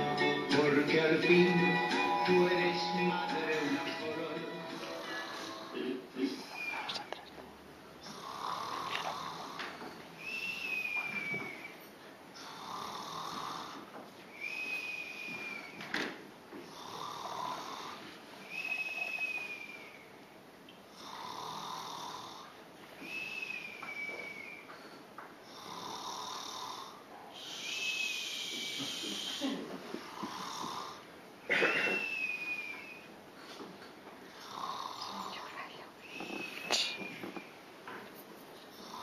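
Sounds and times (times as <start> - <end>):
thin whistle: 6.5 - 7.1, 10.2 - 11.9, 14.3 - 15.8, 18.4 - 20.1, 23.0 - 24.7, 27.4 - 29.5, 31.8 - 33.1, 36.0 - 37.2
person snoring: 8.0 - 9.6, 12.4 - 13.8, 16.7 - 18.0, 21.0 - 22.5, 25.5 - 29.2, 30.0 - 31.0, 34.4 - 35.4.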